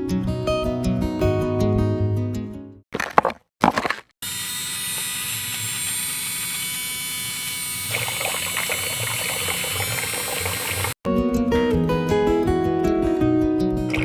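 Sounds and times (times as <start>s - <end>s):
water pouring from pump: 7.9s - 11.0s.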